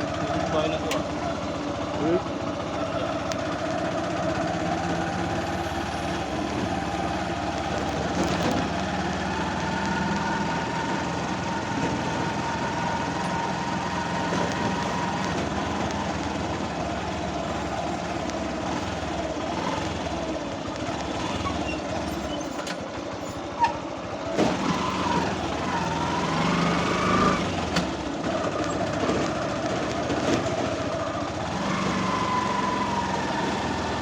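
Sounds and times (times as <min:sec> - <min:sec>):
vehicle engine running: 0:00.0 - 0:34.0.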